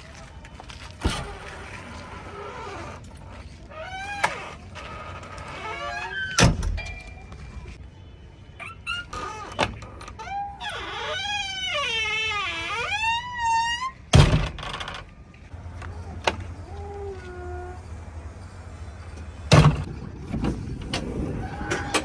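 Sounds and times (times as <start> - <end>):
backhoe engine and hydraulics whining: 13.0 - 22.0.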